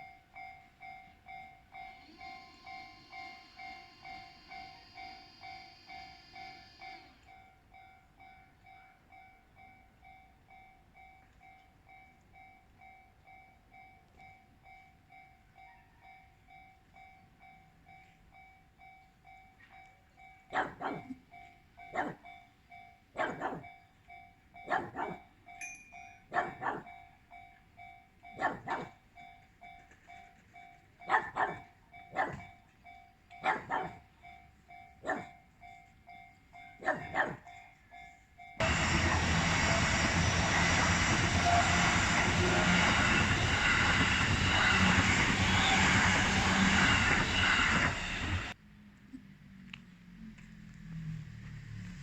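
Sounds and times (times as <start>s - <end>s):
level-crossing warning bell: 0.0s - 48.6s
dog barking: 20.5s - 21.2s, 21.9s - 22.3s, 23.2s - 23.7s, 24.6s - 25.3s, 26.3s - 27.0s, 28.4s - 29.0s, 31.1s - 32.5s, 33.4s - 34.1s, 35.0s - 35.4s, 36.8s - 37.5s.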